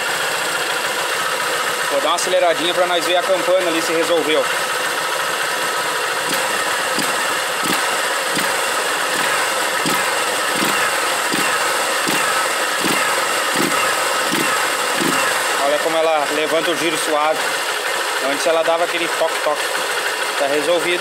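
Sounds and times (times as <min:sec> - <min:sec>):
motorcycle engine revving in blips: 0:04.2 - 0:18.3.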